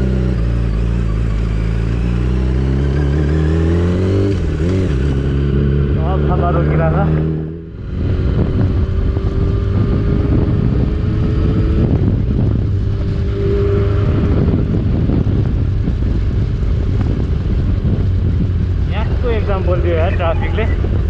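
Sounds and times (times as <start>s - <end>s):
motorcycle engine running: 0.0s - 21.0s
wind buffeting microphone: 7.2s - 21.0s.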